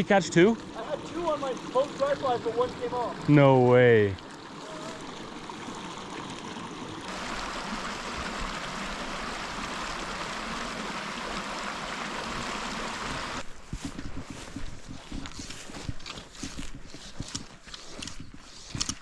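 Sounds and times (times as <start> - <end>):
creek running over rocks: 0.0 - 19.0.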